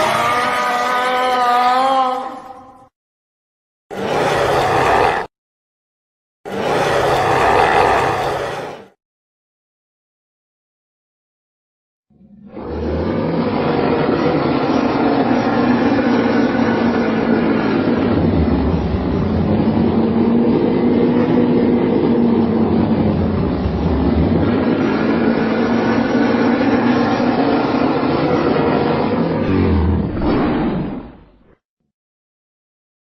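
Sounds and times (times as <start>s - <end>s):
creature rumbling cry: 0.0s - 2.8s, 3.9s - 5.3s, 6.5s - 8.9s, 12.2s - 31.3s.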